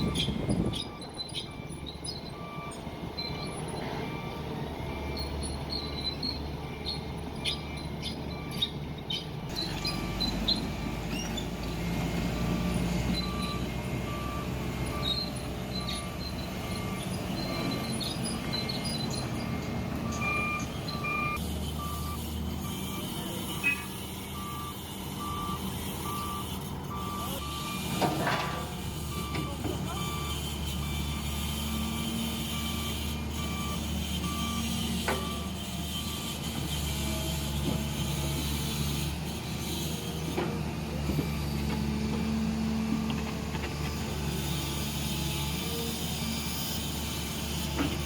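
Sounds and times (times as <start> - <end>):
reversing alarm beeping: 0.0 - 11.6, 12.3 - 36.4
diesel engine running: 0.0 - 48.0.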